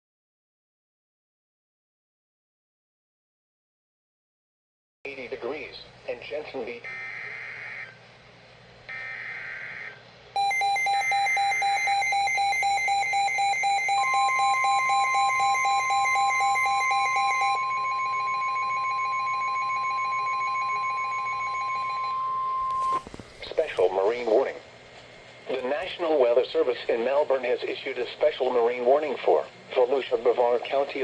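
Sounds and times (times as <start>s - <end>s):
rapidly pulsing alarm beep: 6.9s - 8.0s, 8.9s - 23.8s
steady warning tone: 8.9s - 24.1s.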